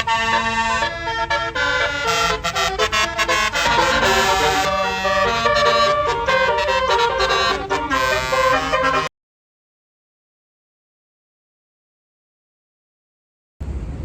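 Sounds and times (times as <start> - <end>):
musical air horns playing tune: 0.0 - 9.1.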